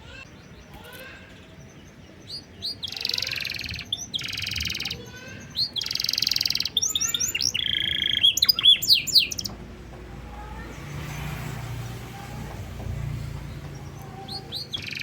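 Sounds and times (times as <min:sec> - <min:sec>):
canary singing: 0:00.0 - 0:15.0.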